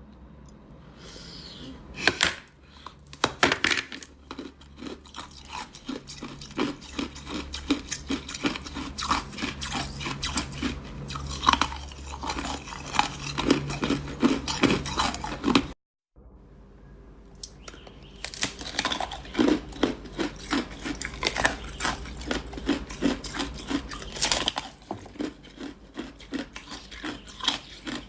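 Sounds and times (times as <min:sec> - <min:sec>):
ice crunching being chewed: 0:04.0 - 0:15.8, 0:17.4 - 0:28.0.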